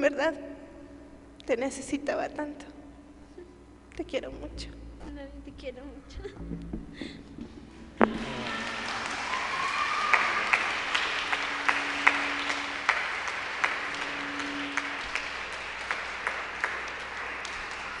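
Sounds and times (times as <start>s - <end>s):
audience applauding: 8.0s - 18.0s
sharp individual hand claps: 8.0s - 18.0s.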